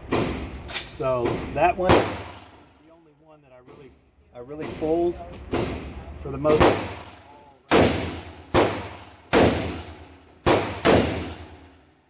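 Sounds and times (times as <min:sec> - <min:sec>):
rifle shots with echo: 0:06.6 - 0:11.6.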